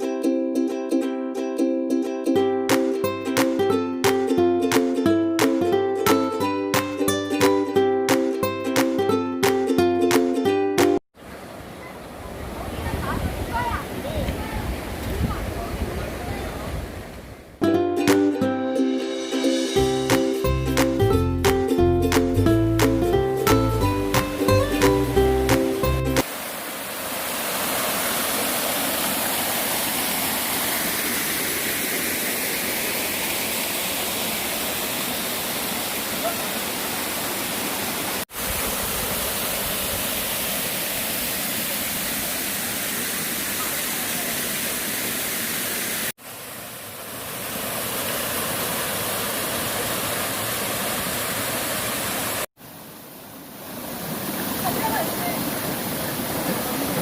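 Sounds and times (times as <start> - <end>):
stream rushing: 2.7 - 18.4, 19.0 - 57.0.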